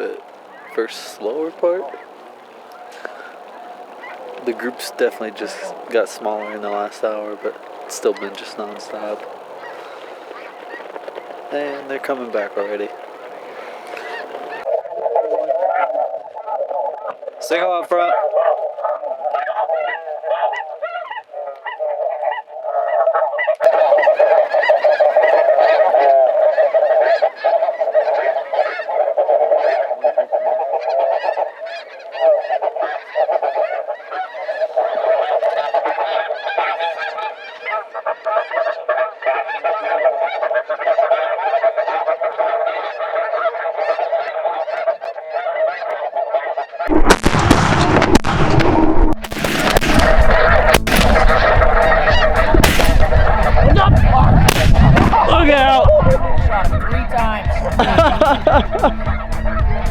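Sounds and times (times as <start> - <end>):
geese honking: 0.0 - 59.9
shotgun fire: 46.9 - 55.7.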